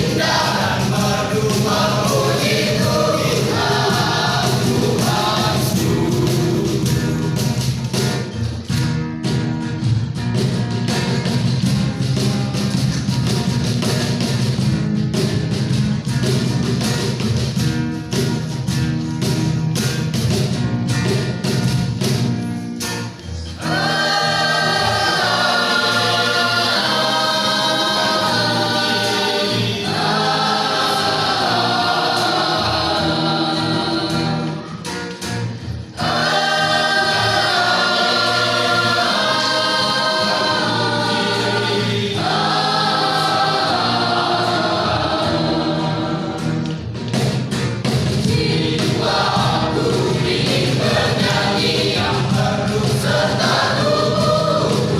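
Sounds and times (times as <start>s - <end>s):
choir singing in harmony: 0.0s - 7.7s, 23.4s - 34.9s, 35.5s - 46.8s, 48.1s - 54.9s.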